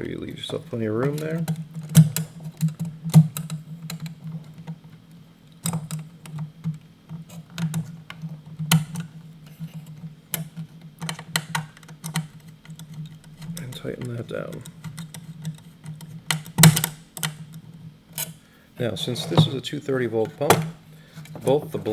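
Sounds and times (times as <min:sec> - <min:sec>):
steady low hum: 0:00.0 - 0:21.9
screwdriver clicks and taps: 0:01.0 - 0:04.8, 0:05.6 - 0:18.4.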